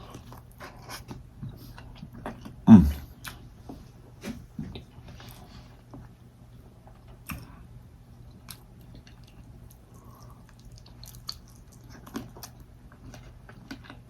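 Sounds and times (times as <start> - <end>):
person chewing food: 8.2 - 14.0.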